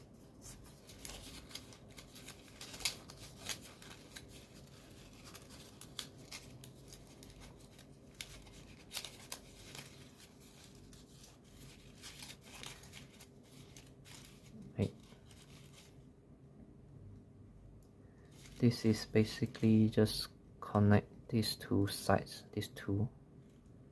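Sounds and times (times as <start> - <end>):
paper clicks and crinkles: 0.0 - 16.0, 18.2 - 19.9
paper rustling: 0.0 - 16.0, 18.2 - 19.9.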